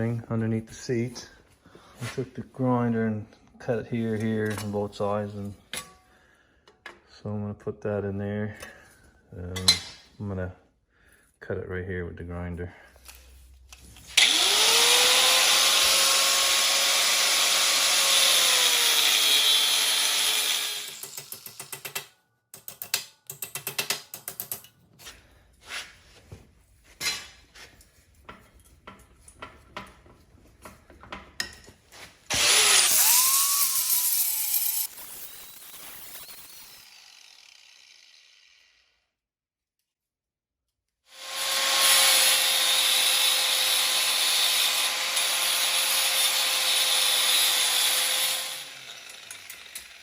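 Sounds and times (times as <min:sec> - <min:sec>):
angle grinder cutting metal: 0:14.0 - 0:22.1, 0:32.3 - 0:39.0, 0:41.1 - 0:50.0.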